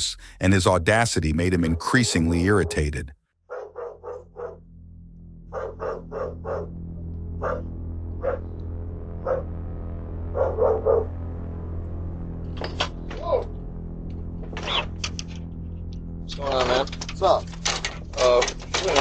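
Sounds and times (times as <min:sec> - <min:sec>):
steady low hum: 0:00.0 - 0:19.0
dog barking: 0:03.5 - 0:04.6, 0:05.5 - 0:06.8, 0:07.4 - 0:08.4, 0:09.2 - 0:09.5, 0:10.3 - 0:11.1.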